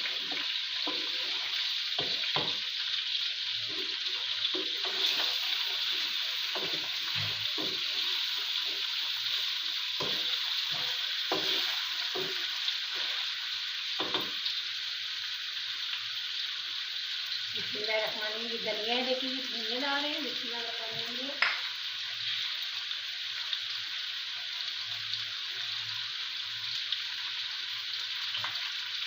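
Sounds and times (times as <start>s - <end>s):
spoon scraping and knocking pan: 0.0s - 2.7s, 3.7s - 13.3s, 14.0s - 14.4s
chicken sizzling in hot oil: 0.0s - 29.0s.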